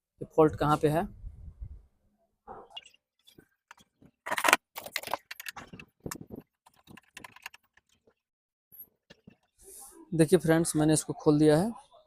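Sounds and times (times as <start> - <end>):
metallic clicks and rattles: 3.7 - 8.1.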